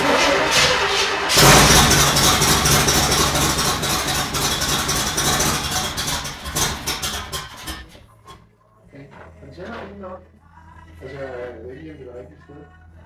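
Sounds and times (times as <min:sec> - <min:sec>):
engine running unevenly: 0:01.4 - 0:08.0
engine starter cranking: 0:01.4 - 0:08.4.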